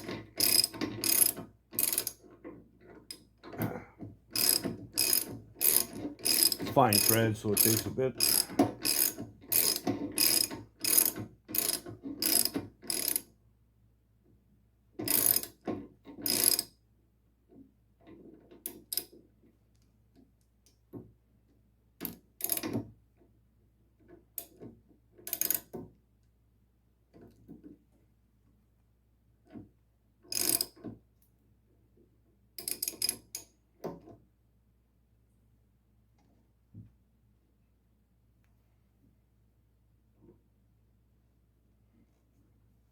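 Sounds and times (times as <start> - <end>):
ratchet wrench clicking: 4.4 - 13.2, 30.3 - 30.7.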